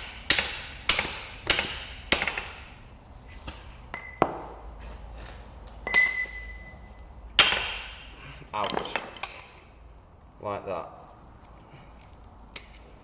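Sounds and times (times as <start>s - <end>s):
hammer striking metal: 0.0s - 2.8s, 7.4s - 9.3s
high metallic ringing ping: 3.9s - 4.3s, 5.9s - 7.0s.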